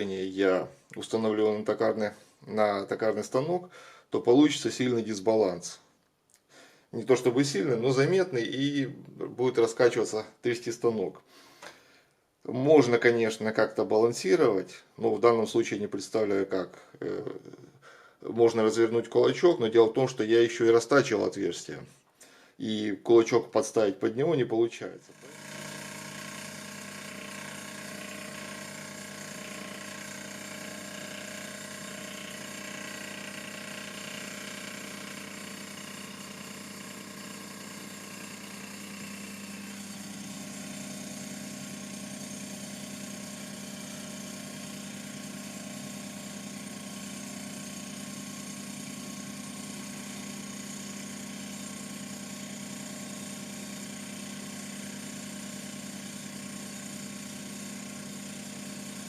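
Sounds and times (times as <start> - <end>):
milling machine motor humming: 25.1 - 59.0.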